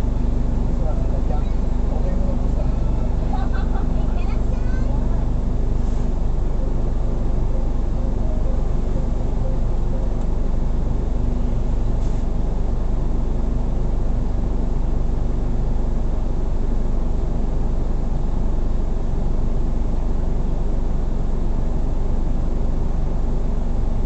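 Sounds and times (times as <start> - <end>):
car engine and road noise: 0.0 - 24.0.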